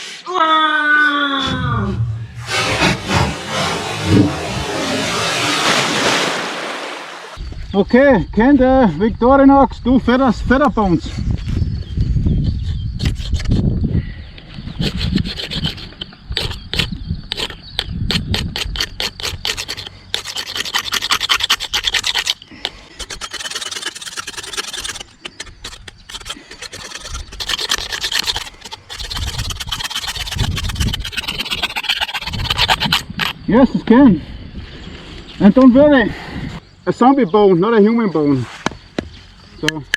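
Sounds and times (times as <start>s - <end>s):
knife scraping wood: 2.0s - 6.1s, 13.0s - 13.6s, 14.8s - 33.4s.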